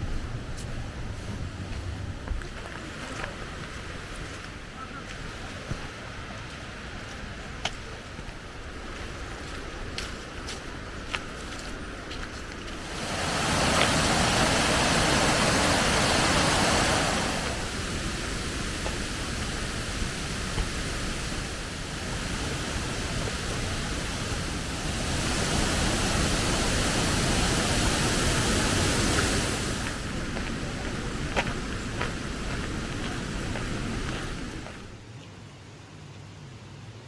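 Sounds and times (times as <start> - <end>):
waterfall roaring: 11.0 - 35.0.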